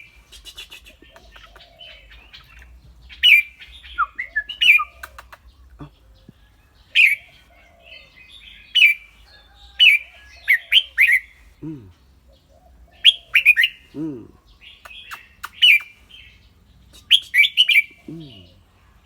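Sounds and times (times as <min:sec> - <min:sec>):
bird chattering calls: 0:00.0 - 0:06.1, 0:09.8 - 0:18.6
bird song phrases: 0:00.0 - 0:19.0.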